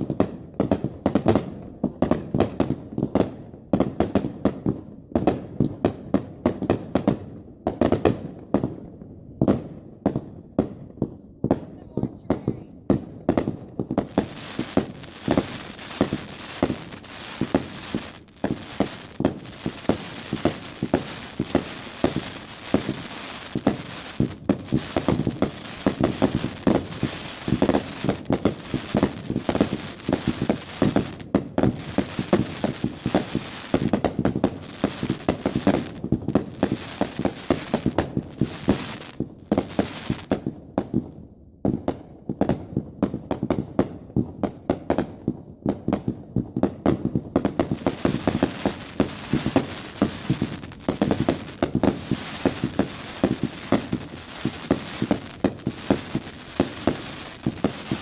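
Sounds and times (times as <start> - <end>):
fireworks bangs: 11.4 - 41.0, 46.6 - 58.0
fireworks crackling: 11.5 - 40.6, 45.7 - 58.0.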